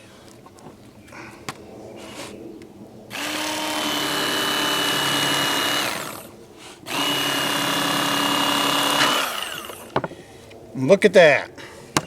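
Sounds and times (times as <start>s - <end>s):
electric knife motor whining: 3.1s - 6.3s, 6.9s - 10.0s.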